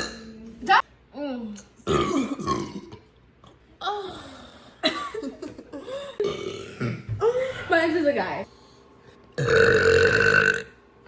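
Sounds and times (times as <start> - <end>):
person burping: 0.0 - 0.4, 1.8 - 3.1, 6.2 - 7.2, 9.4 - 10.8.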